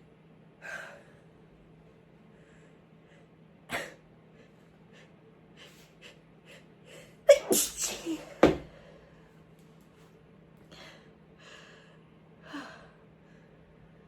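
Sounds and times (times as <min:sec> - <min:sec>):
stifled sneezes: 0:07.3 - 0:08.6
quick sniffs: 0:07.4 - 0:08.3.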